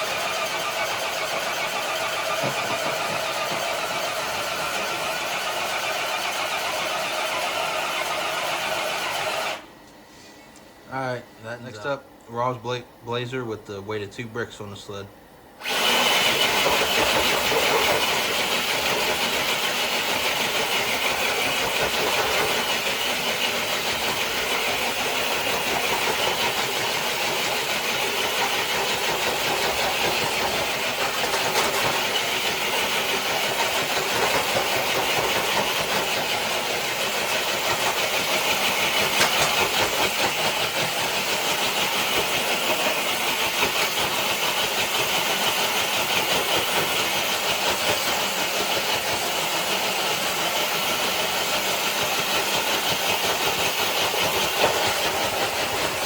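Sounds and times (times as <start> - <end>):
electric motor whirring: 15.6 - 45.4
sled scraping on concrete: 15.9 - 56.0.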